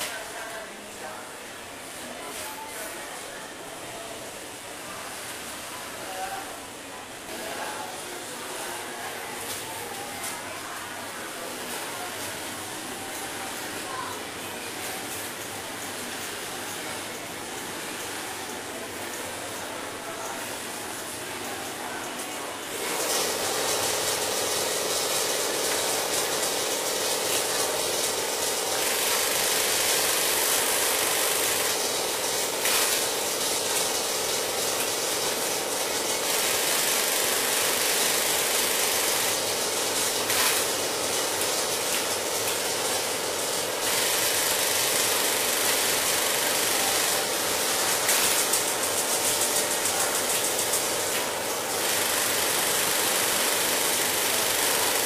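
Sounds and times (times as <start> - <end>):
sewing machine running: 11.3 - 55.0.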